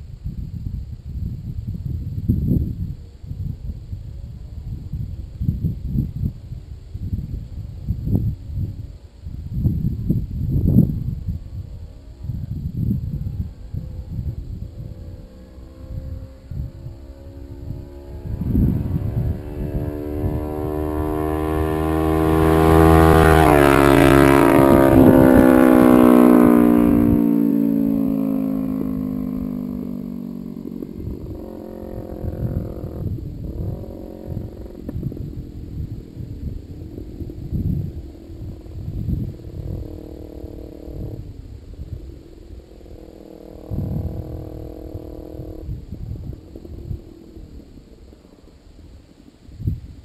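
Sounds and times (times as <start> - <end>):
motorcycle engine passing by: 9.6 - 48.6.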